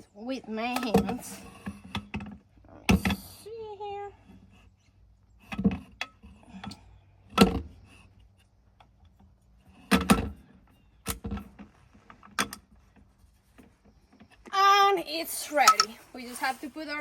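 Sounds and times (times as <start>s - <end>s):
metallic rifle parts clicking: 15.6s - 16.0s.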